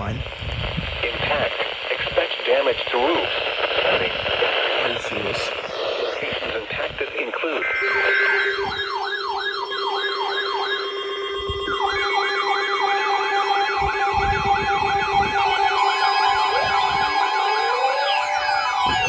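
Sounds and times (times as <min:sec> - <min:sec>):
siren yelping: 0:07.6 - 0:19.0
steady low siren tone: 0:07.6 - 0:19.0.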